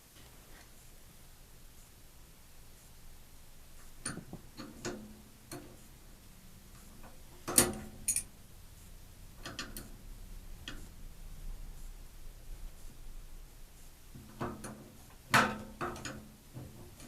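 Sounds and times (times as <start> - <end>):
tools and metal parts clicking: 7.5 - 8.3.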